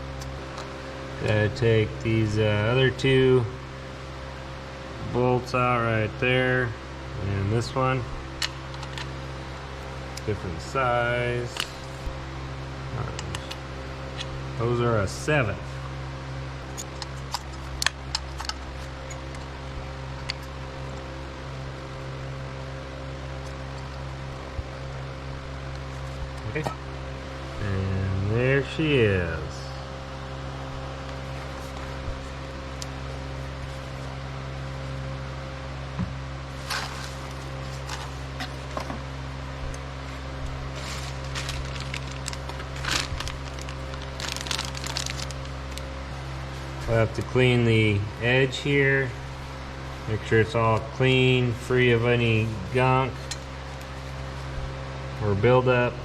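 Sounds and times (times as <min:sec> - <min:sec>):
steady mechanical hum: 0:00.0 - 0:56.0
rustling of parts handled: 0:36.6 - 0:39.0, 0:40.1 - 0:45.9.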